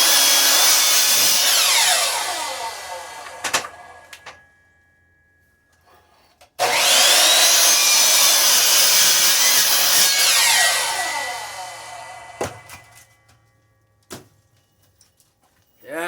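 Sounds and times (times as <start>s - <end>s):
saw blade cutting wood: 0.0s - 4.3s, 6.0s - 13.2s.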